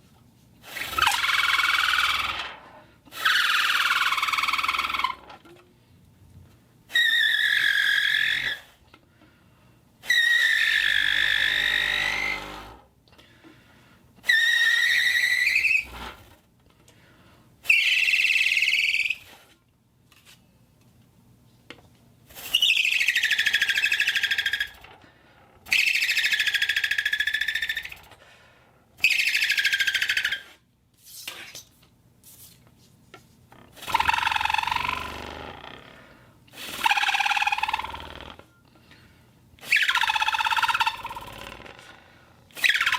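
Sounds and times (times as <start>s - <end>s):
shrill bottle whistle blasts: 3.1s - 5.2s, 6.9s - 8.8s, 10.0s - 12.5s, 14.2s - 16.1s, 17.6s - 19.4s, 22.3s - 24.8s, 25.7s - 28.0s, 29.0s - 30.6s, 33.8s - 35.3s, 36.6s - 38.1s, 39.6s - 41.4s, 42.6s - 42.9s.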